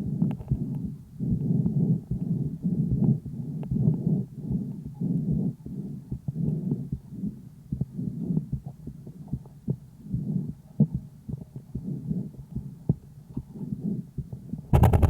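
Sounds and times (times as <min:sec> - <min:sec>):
breath sounds through stethoscope: 0:00.0 - 0:15.0
heartbeat clicks: 0:00.0 - 0:15.0
scraping knocking noise: 0:14.7 - 0:15.0.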